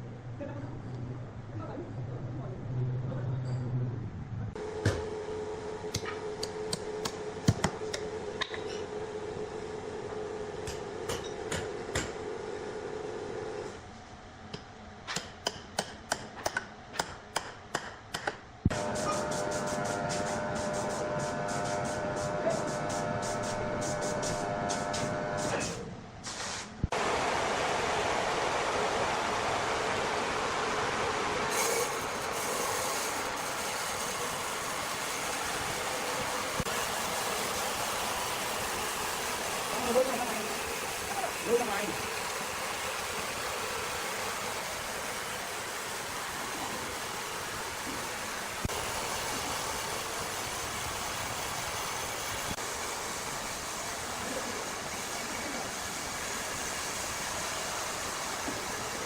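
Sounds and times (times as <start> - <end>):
mechanical hum: 0.0 - 59.0.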